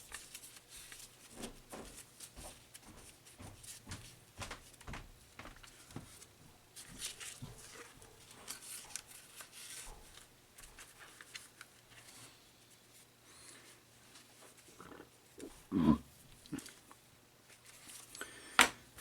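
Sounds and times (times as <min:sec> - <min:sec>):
paper and cardboard rustling: 0:00.0 - 0:12.4.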